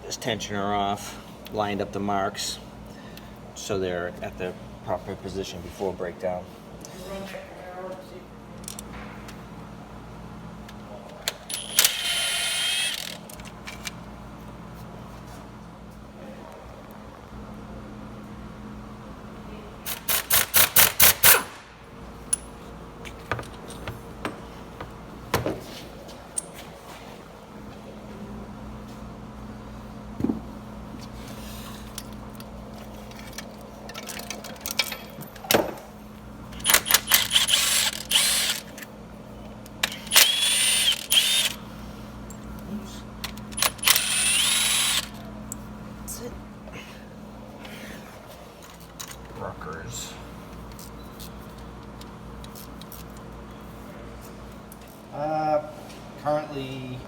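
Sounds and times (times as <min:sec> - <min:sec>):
power tool hammering: 0:11.5 - 0:13.2, 0:19.9 - 0:21.6, 0:36.6 - 0:38.6, 0:39.8 - 0:41.6, 0:43.6 - 0:45.2
tools knocking on metal: 0:23.1 - 0:25.6.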